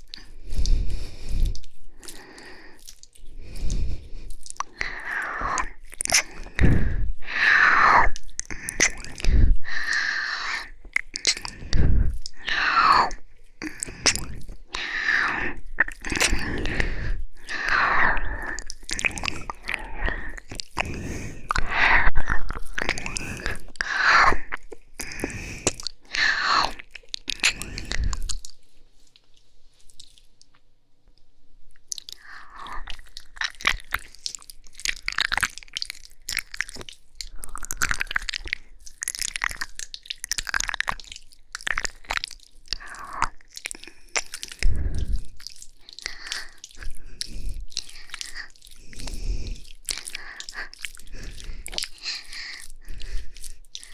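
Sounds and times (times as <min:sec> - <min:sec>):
wet licking and kissing smacks: 0:00.0 - 0:21.7, 0:22.5 - 0:29.3, 0:31.7 - 0:53.9.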